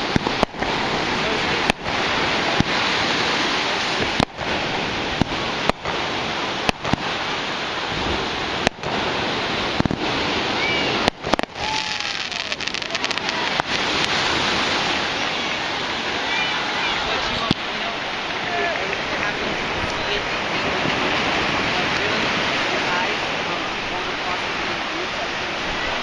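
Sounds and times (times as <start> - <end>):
sharp firework cracks: 0.0 - 17.7
fireworks crackling: 0.0 - 26.0
firework whistling glides: 9.8 - 17.6.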